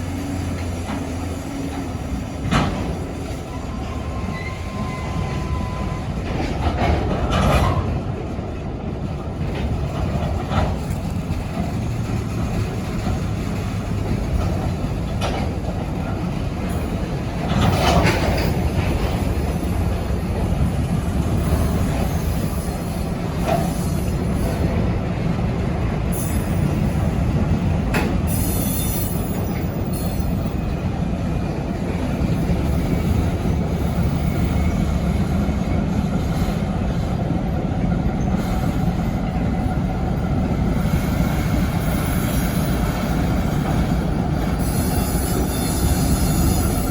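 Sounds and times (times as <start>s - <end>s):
diesel locomotive running: 0.0s - 46.9s
wheels squealing: 40.8s - 46.9s.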